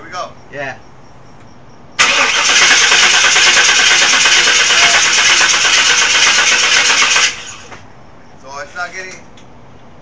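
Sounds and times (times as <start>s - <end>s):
engine cranking by starter: 2.0s - 7.8s.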